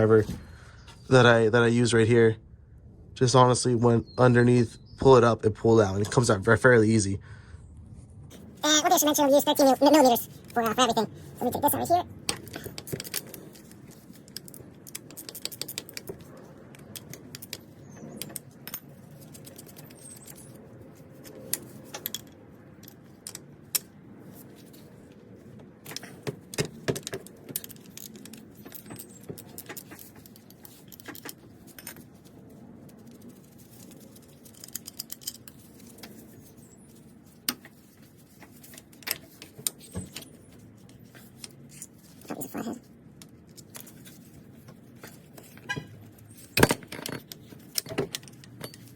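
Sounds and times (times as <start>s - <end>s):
metal tools clinking: 25.9s - 48.9s.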